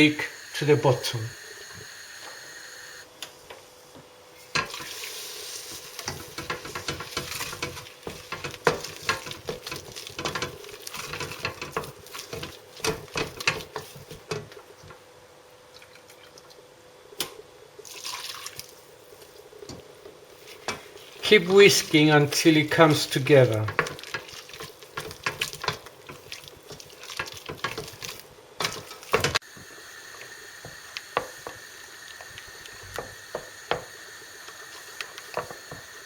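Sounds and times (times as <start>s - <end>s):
whisk scraping against a pan: 4.9s - 14.3s, 22.8s - 29.4s
milk pouring into a pan: 17.8s - 18.8s.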